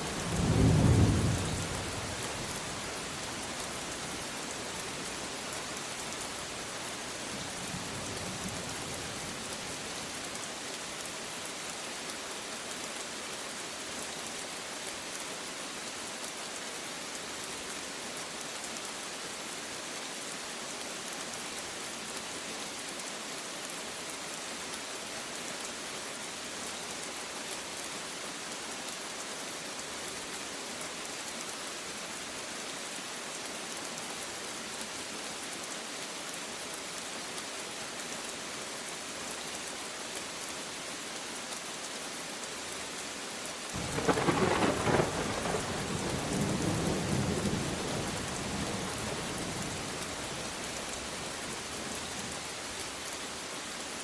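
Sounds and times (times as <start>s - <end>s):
steady rain falling: 0.0s - 54.0s
low rumble of thunder: 0.1s - 2.6s, 43.8s - 50.3s.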